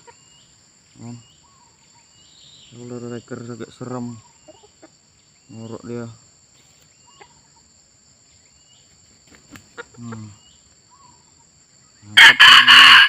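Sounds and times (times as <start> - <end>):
faint bird chirps: 0.0 - 12.2
forest insects droning: 0.0 - 13.0
rooster crowing: 12.2 - 13.0.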